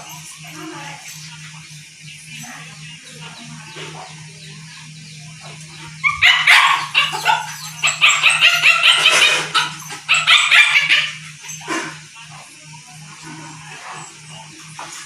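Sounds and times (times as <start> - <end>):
faint steady hum: 0.0 - 15.0
dog barking and yapping: 6.0 - 11.7.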